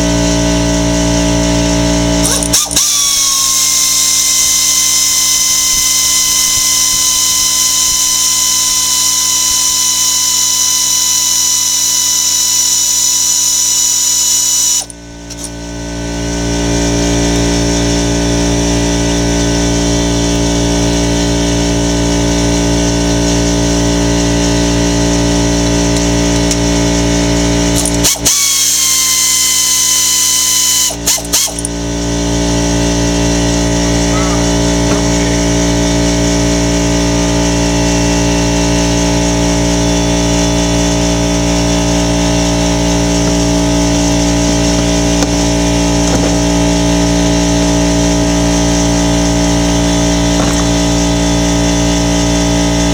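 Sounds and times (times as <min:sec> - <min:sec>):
electric motor whining: 0:00.0 - 0:52.9.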